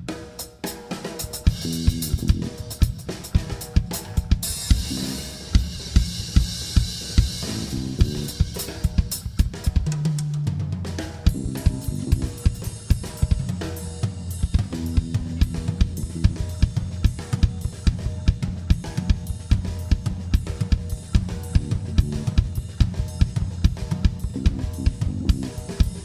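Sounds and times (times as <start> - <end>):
drum kit beat: 0.0 - 26.0
live band playing: 1.5 - 3.1, 4.5 - 6.3, 7.4 - 9.2, 11.6 - 13.2, 14.7 - 17.1
low held notes: 7.4 - 8.4, 14.6 - 16.6, 21.6 - 22.4, 24.4 - 25.6.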